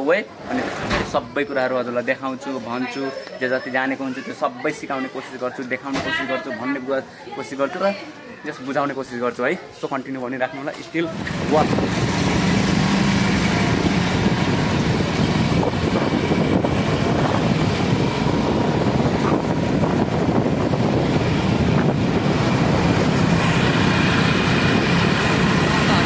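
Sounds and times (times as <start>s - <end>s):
vehicle road noise: 11.0s - 26.0s
wind on microphone: 11.1s - 26.0s.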